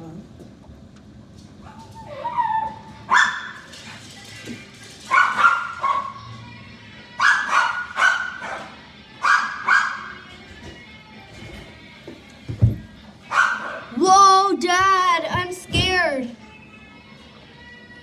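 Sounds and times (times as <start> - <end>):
dog barking: 1.7 - 3.6, 5.1 - 6.2, 7.2 - 10.2, 13.3 - 13.9
dog whining: 1.7 - 3.6.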